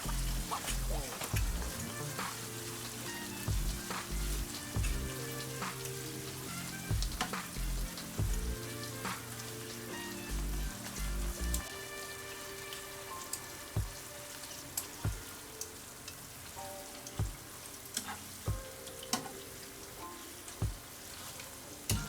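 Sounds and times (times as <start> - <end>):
background music with low beat: 0.0 - 12.2, 13.8 - 14.2, 14.9 - 15.4, 16.6 - 17.6, 18.4 - 19.3, 20.6 - 21.0
chicken skin sizzling in oil: 0.0 - 22.0.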